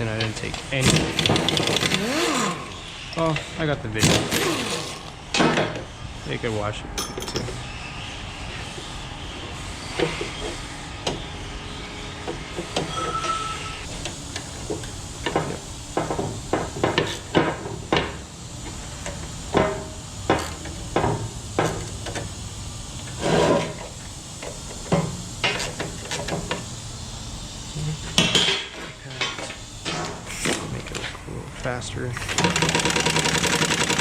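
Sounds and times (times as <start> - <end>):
tools and metal parts clinking: 7.0 - 7.7.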